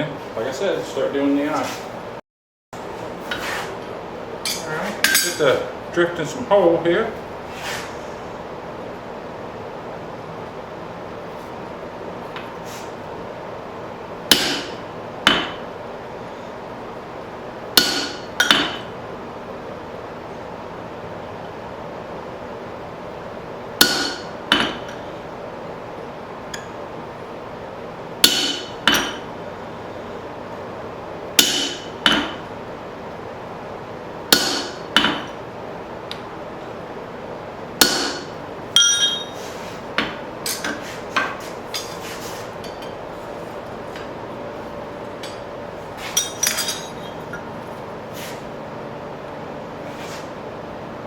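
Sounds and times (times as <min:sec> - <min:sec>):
steady hum: 0:02.8 - 0:51.0
hammer ringing on steel: 0:38.8 - 0:39.4.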